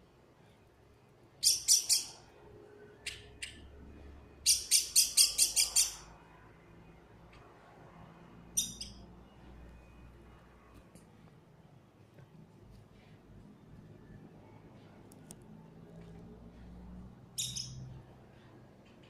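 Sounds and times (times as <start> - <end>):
bird giving harsh high calls: 1.4 - 2.2, 4.4 - 6.1.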